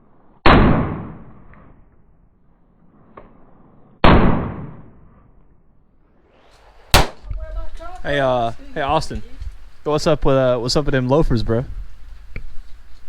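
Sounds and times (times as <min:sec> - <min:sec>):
gunshots with echo: 0:00.5 - 0:01.5, 0:04.0 - 0:05.2, 0:07.0 - 0:07.3.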